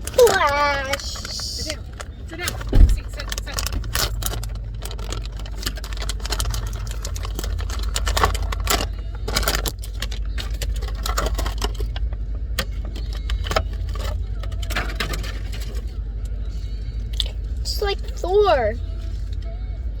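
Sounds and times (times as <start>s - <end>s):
plastic packaging crinkling: 0.0s - 12.0s
steady low rumble: 0.0s - 20.0s.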